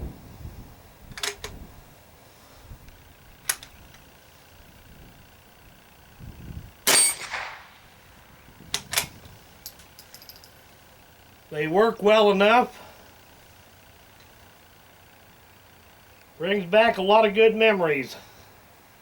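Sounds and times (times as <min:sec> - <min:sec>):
rifle shot: 0:06.8 - 0:08.0.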